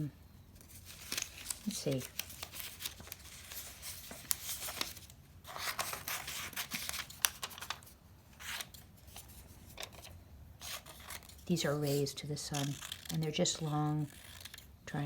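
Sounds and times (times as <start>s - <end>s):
scissors snipping paper: 11.9s - 14.7s.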